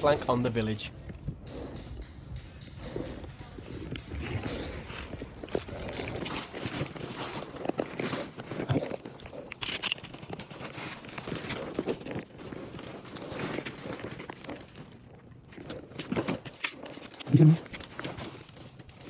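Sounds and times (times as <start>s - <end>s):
footsteps crunching leaves and twigs: 4.0s - 15.0s.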